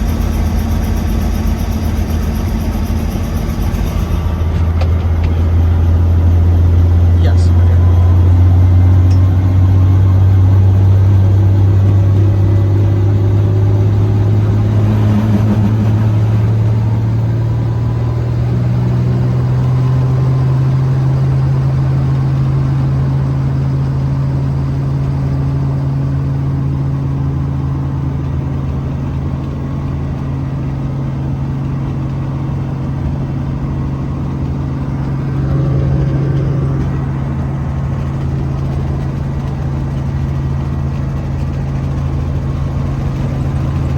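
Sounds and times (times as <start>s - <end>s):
helicopter engine and rotor drone: 0.0s - 43.9s.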